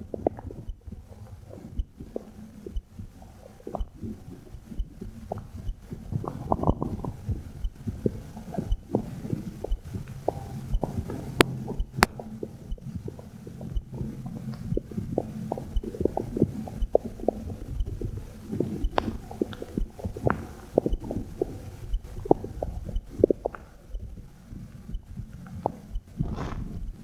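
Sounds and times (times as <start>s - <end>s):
faint heartbeat: 0.0s - 27.0s
stomach gurgling: 0.0s - 27.0s.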